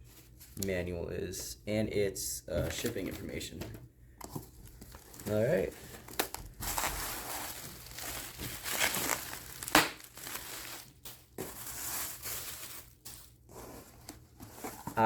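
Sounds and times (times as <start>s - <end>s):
packing material crinkling: 4.6s - 14.0s.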